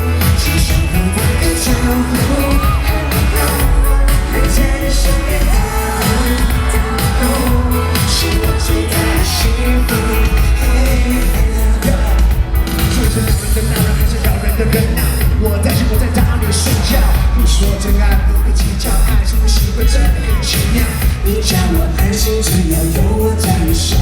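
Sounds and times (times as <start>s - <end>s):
live pop music: 0.0s - 24.0s
person singing: 0.0s - 24.0s.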